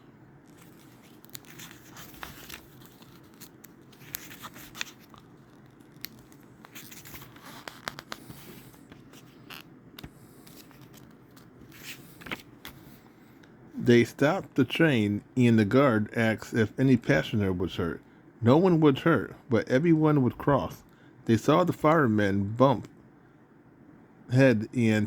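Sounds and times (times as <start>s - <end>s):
paper pages rustling: 0.4s - 13.1s.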